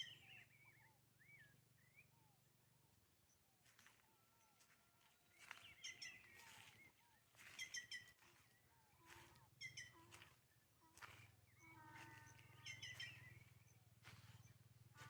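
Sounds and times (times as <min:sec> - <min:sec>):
wild birds singing and calling: 0:04.4 - 0:14.6.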